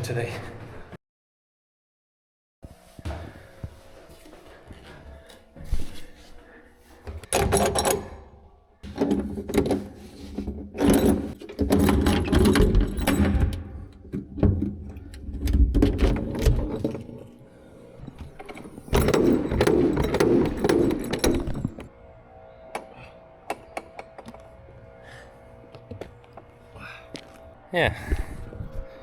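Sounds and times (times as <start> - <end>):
ladder clattering and rattling: 8.8 - 17.3, 18.0 - 21.9.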